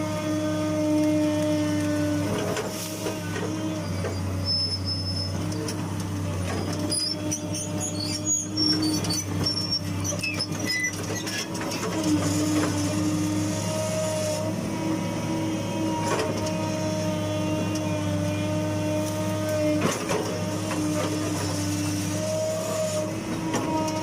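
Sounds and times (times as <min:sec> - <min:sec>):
excavator diesel engine running: 0:00.0 - 0:24.0
short high squeaks: 0:03.8 - 0:05.7, 0:06.7 - 0:11.5.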